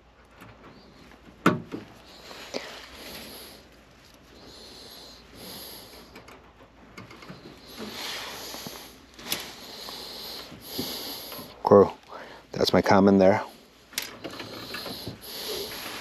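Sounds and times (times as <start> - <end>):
person breathing heavily: 2.0 - 6.2, 7.3 - 12.6, 14.2 - 16.0
sniffing: 2.0 - 6.2, 7.3 - 12.4, 14.2 - 16.0.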